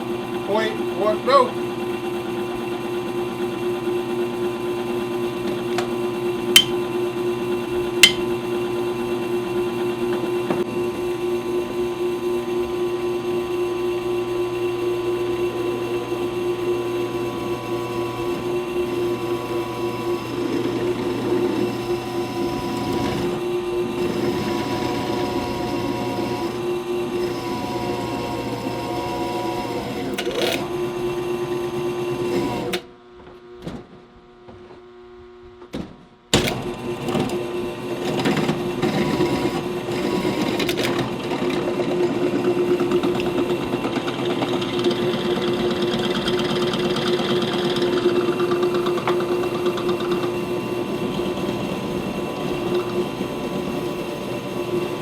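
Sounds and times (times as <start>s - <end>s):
drill motor drilling through steel: 15.6s - 32.8s, 36.8s - 55.0s.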